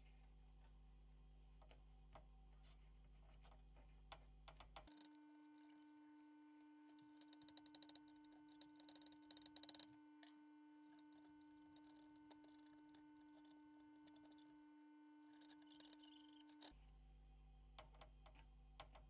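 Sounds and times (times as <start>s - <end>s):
faint steady hum: 4.8s - 19.0s
faint clicks: 6.9s - 14.5s, 15.2s - 16.7s.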